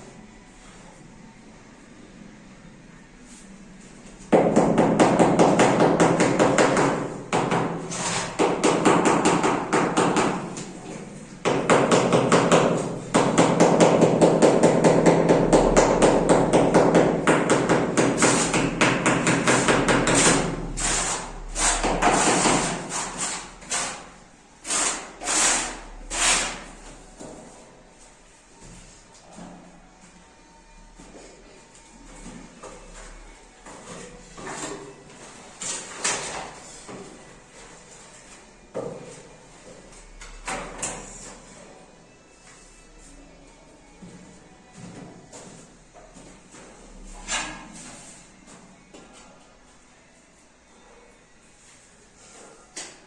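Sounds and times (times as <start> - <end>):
rapid hammering: 4.3 - 7.8, 8.4 - 10.5, 11.4 - 22.8.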